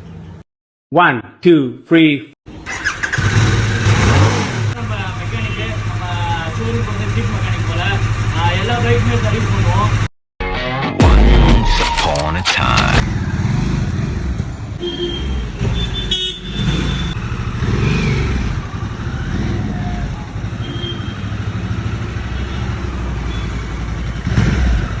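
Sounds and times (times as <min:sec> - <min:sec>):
motorcycle engine idling: 0:02.5 - 0:10.1, 0:13.0 - 0:25.0.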